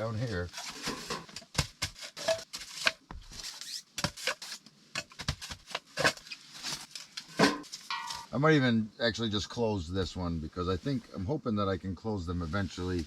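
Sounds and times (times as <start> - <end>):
rustling: 0.0 - 8.4.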